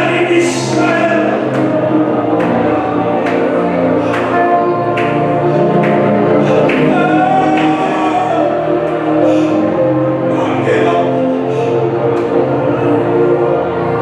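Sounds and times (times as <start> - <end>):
steady beat: 0.0 - 9.2
choir singing gospel song: 0.0 - 14.0.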